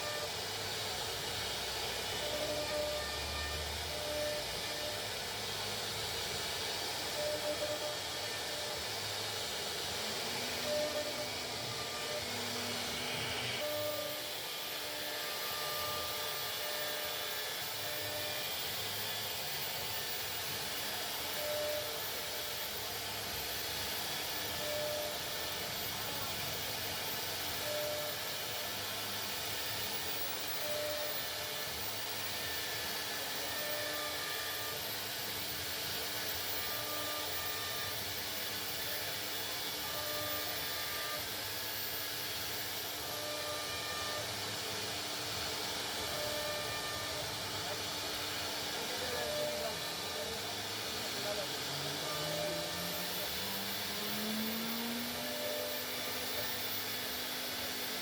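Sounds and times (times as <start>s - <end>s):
router spindle cutting plastic: 0.0s - 58.0s.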